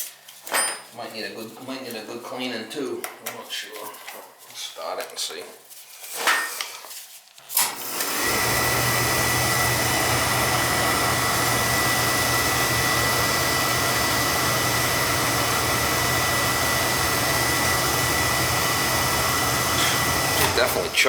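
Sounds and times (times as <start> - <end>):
oil burner running: 7.6 - 21.0.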